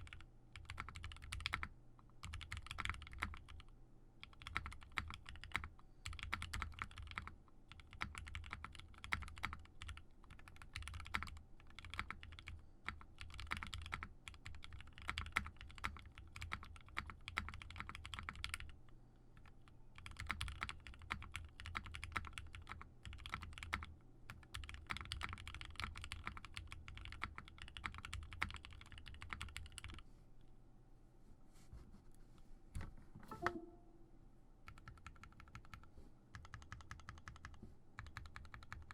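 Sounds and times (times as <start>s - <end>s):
mechanical keyboard typing: 0.0s - 18.7s, 19.4s - 30.0s, 34.7s - 38.9s.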